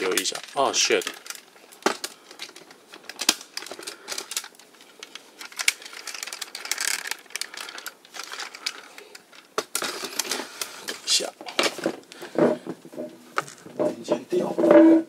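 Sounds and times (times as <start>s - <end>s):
plastic toy parts clicking: 0.0s - 10.4s.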